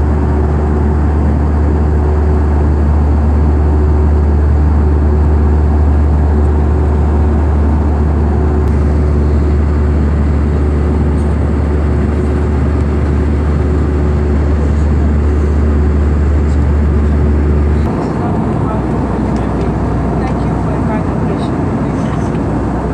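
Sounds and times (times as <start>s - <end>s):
aircraft engine hum: 0.0s - 22.9s
cabin air rush: 4.5s - 22.9s.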